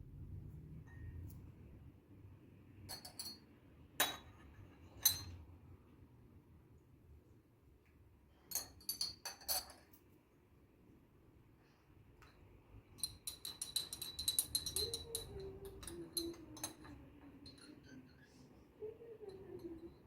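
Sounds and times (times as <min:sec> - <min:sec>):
hard objects clinking: 0:12.2 - 0:18.2.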